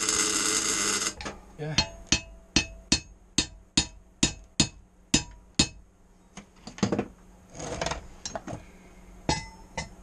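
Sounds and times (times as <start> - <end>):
hammer striking steel: 1.7 - 5.8, 9.3 - 10.0.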